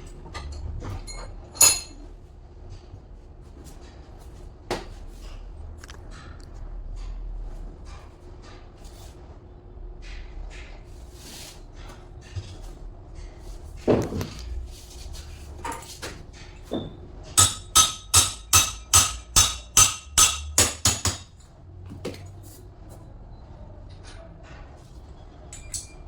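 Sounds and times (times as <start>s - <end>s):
hammer striking metal: 17.4s - 21.4s.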